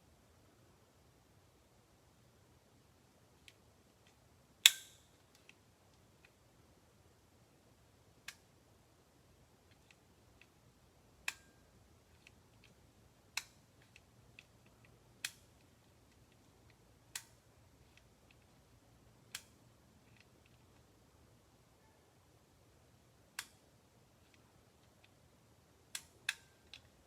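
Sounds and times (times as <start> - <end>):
sharp clicks: 12.2 - 20.8, 23.4 - 25.2, 25.9 - 27.0.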